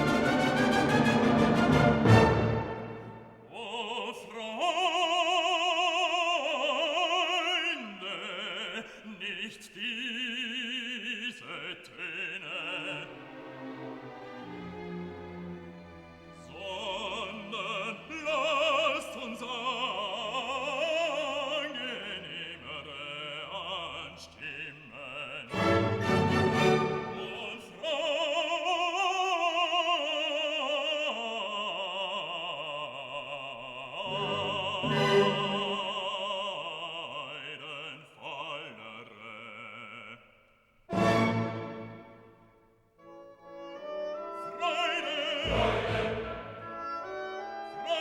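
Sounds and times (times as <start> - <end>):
classical instrumental accompaniment: 0.0 - 3.7, 12.6 - 23.5, 25.5 - 28.3, 34.0 - 36.6, 40.9 - 48.0
operatic singer: 0.0 - 42.4, 43.0 - 48.0.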